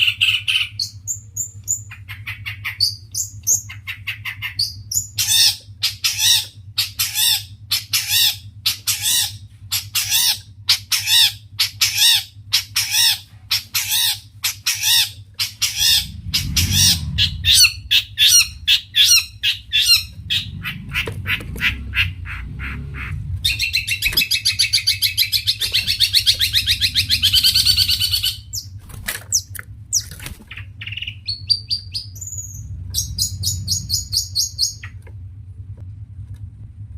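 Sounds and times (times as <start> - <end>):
steady low hum: 0.0 - 36.9
shrike harsh repeated calls: 3.8 - 28.6
bird rattling trill: 23.4 - 31.0.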